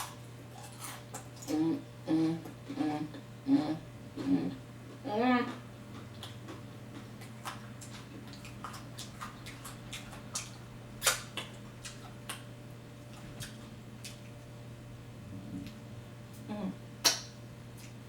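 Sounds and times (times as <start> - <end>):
chewing and crunching chips: 0.0 - 1.7, 4.9 - 14.5
low steady hum: 0.0 - 18.0.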